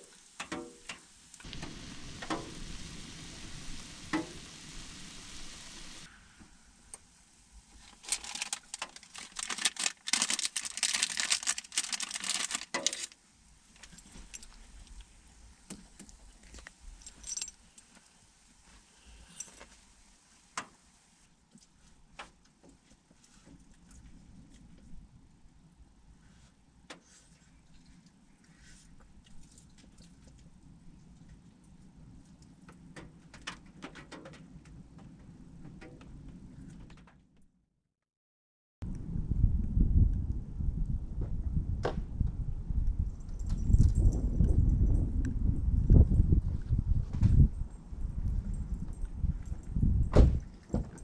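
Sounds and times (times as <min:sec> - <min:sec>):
steady hiss: 0:00.0 - 0:09.2.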